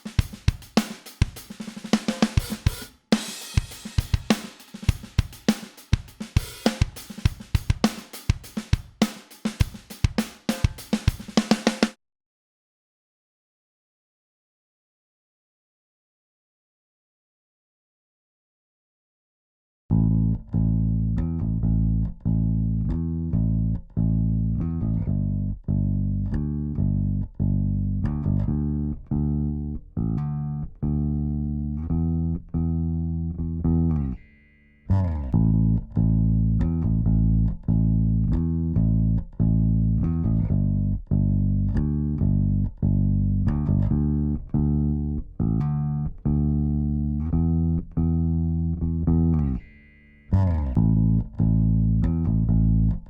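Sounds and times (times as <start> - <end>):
bass guitar plucked: 19.9 - 53.0.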